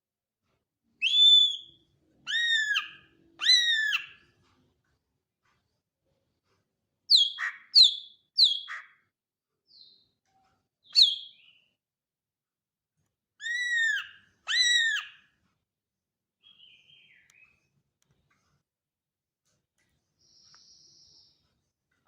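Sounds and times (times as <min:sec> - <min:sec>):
bird singing: 0:01.0 - 0:04.2, 0:07.1 - 0:09.0, 0:10.8 - 0:11.8, 0:13.4 - 0:15.2.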